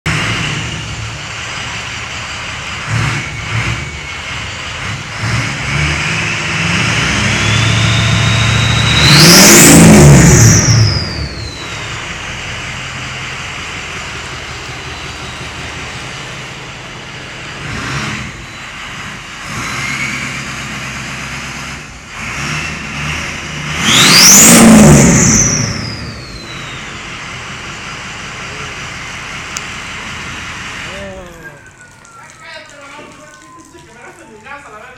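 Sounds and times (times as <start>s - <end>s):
diesel truck engine revving: 0.0s - 31.7s
turbo whistle: 6.2s - 12.0s, 23.8s - 27.1s.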